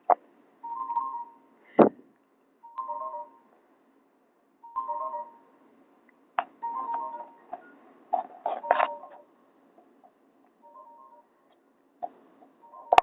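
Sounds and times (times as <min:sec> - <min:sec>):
phone ringtone through small speaker: 0:00.6 - 0:01.6, 0:02.6 - 0:03.6, 0:04.6 - 0:05.6, 0:06.6 - 0:07.8, 0:08.4 - 0:09.3, 0:10.6 - 0:11.3, 0:12.6 - 0:13.0.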